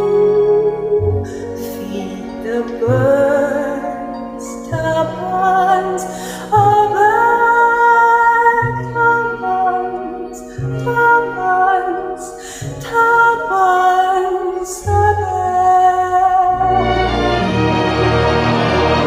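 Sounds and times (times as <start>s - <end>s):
woman singing with vibrato: 0.0s - 17.0s
singer breathing: 6.1s - 6.5s, 12.4s - 12.8s.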